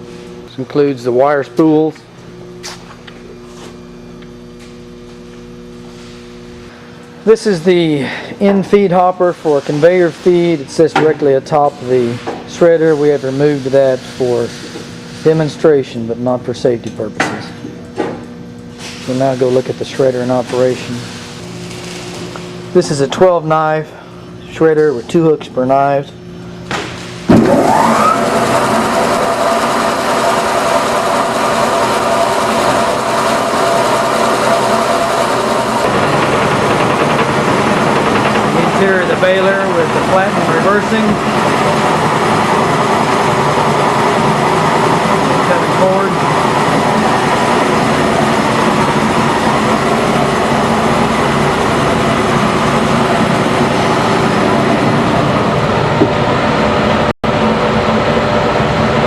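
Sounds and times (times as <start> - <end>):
industrial shredder running: 19.8 - 25.3, 25.9 - 59.0
motor rising whine: 20.8 - 59.0.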